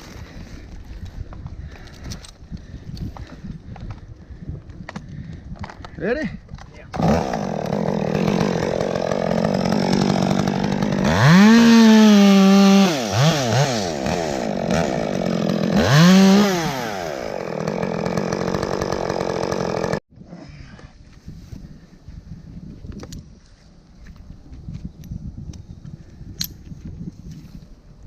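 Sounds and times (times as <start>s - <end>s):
chainsaw idling and revving: 6.9s - 20.0s.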